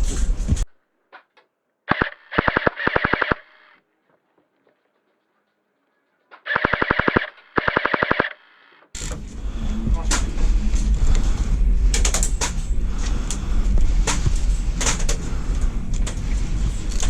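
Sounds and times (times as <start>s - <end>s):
airsoft gun firing bursts: 1.9s - 3.8s, 6.5s - 8.4s.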